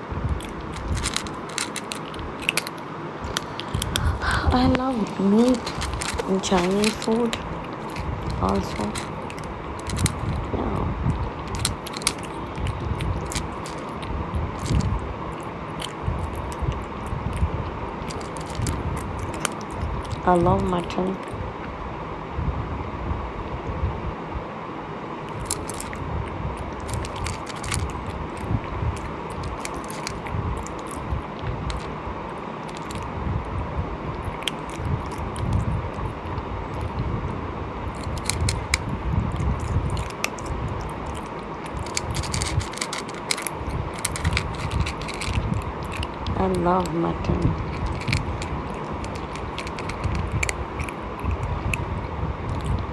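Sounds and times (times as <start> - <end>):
low rumble: 0.0 - 52.9
person chewing meat: 0.3 - 4.4, 5.0 - 10.5, 25.3 - 31.9, 37.9 - 46.4, 47.6 - 52.9.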